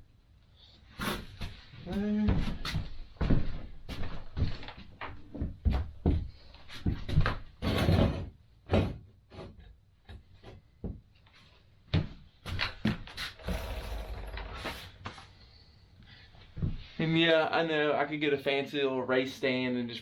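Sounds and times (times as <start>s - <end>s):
tools knocking and scraping: 7.6s - 10.7s.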